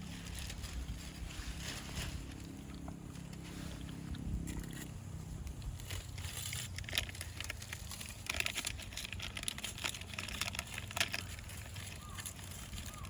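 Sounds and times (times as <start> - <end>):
low fire rumble: 0.0 - 7.8.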